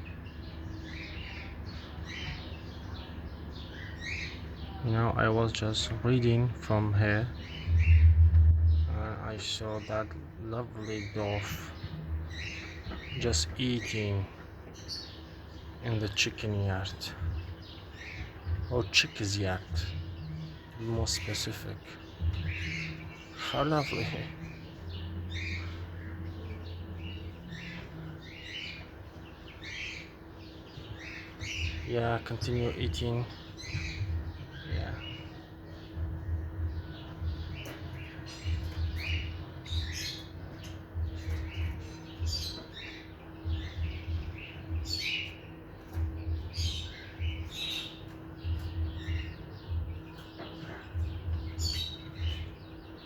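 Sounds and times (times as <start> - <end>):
chicks peeping: 0.0 - 53.0
small birds chirping: 0.0 - 53.0
low hum: 5.5 - 53.0
low rumble: 7.4 - 9.4.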